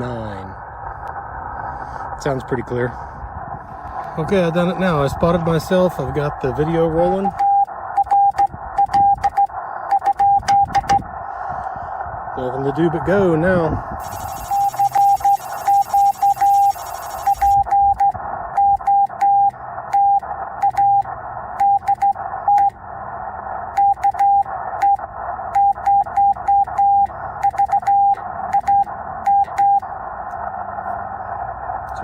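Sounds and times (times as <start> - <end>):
morse code sidetone beeping: 7.3 - 11.0, 14.0 - 22.8, 23.7 - 29.8
radio receiver hiss: 13.8 - 17.7.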